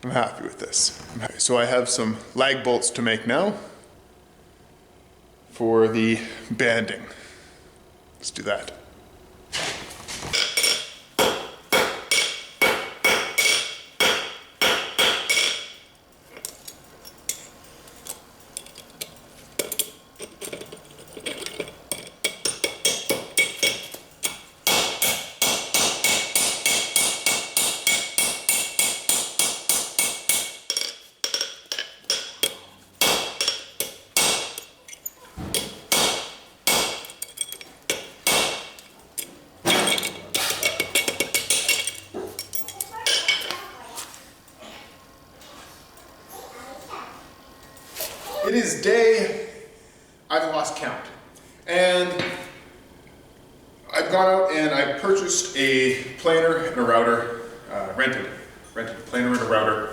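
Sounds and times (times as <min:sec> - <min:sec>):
hammer striking steel on anvil: 0:10.4 - 0:15.8, 0:22.3 - 0:38.9.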